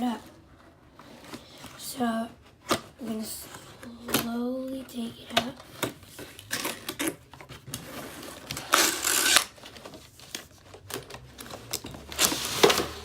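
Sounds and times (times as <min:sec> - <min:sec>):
scraping rustle: 0:06.0 - 0:13.0.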